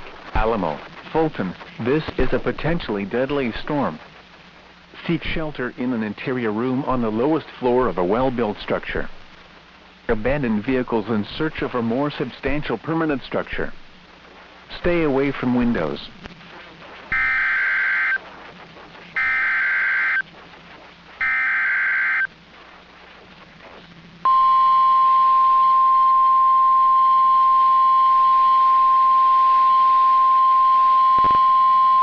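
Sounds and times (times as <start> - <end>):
shrill digital data bursts: 17.1 - 18.2, 19.2 - 20.2, 21.2 - 22.3
steady alarm tone: 17.1 - 18.2, 19.2 - 20.2, 21.2 - 22.3.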